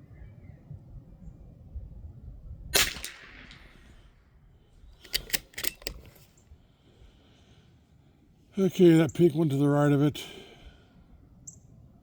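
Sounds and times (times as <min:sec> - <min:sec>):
rifle shot with echo: 0:02.7 - 0:04.1
rifle bolt clicking: 0:05.0 - 0:06.3.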